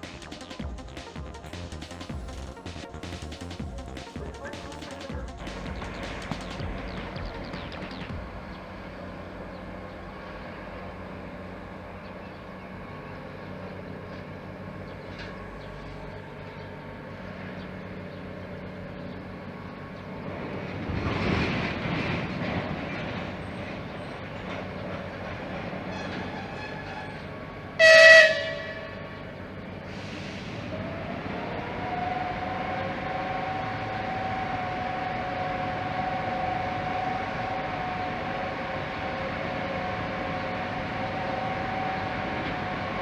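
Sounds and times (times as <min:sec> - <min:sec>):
train rumbling: 0:00.0 - 0:43.0
train horn blast: 0:27.8 - 0:29.4.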